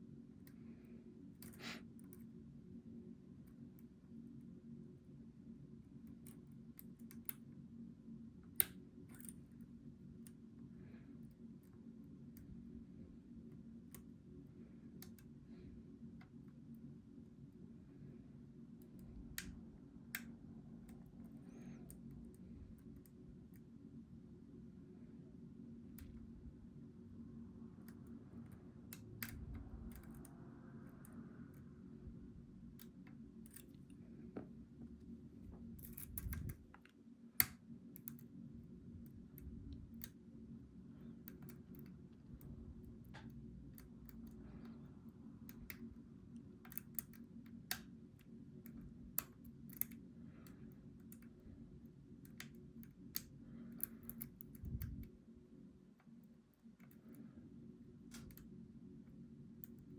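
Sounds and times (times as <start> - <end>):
low hum: 7.8 - 59.9
lock pick metallic clicks: 35.8 - 36.6.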